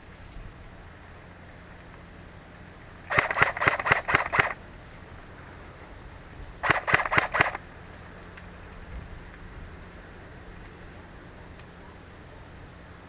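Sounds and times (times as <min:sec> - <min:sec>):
airsoft gun shots: 0:03.1 - 0:04.6, 0:06.6 - 0:07.6.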